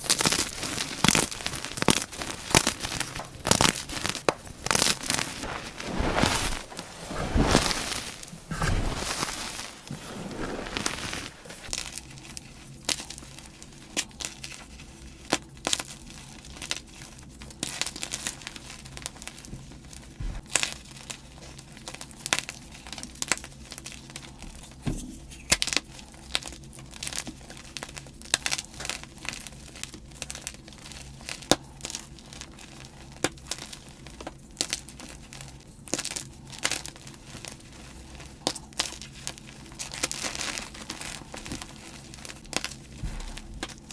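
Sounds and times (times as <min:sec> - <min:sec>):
chalk crunching by hand: 0:00.0 - 0:11.8.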